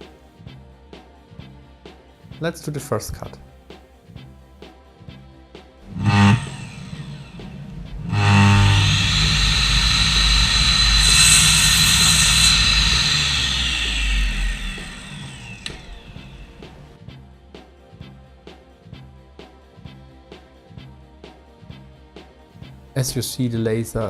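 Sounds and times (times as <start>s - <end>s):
saw blade cutting workpiece: 5.8s - 16.9s
mitre saw motor whining: 5.8s - 17.0s.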